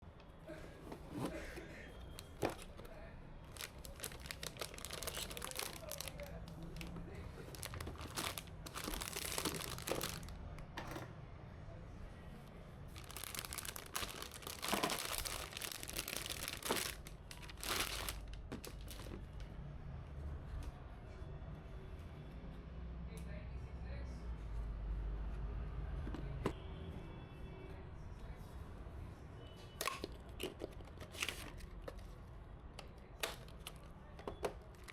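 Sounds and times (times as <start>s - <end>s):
packaging crinkling and rustling: 2.1s - 10.4s, 12.9s - 19.4s, 29.9s - 32.1s, 34.6s - 34.9s.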